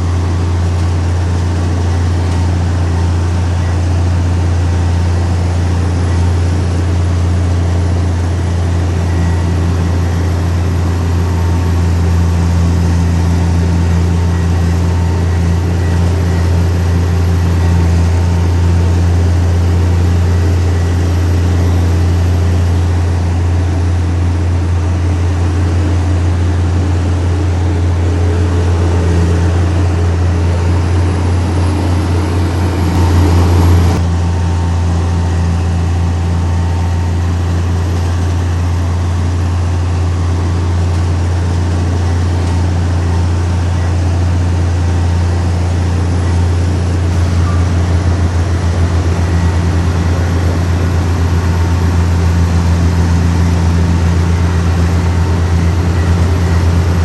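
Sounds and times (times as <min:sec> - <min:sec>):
diesel engine drone: 0:00.0 - 0:57.0
rush of noise: 0:23.0 - 0:39.5.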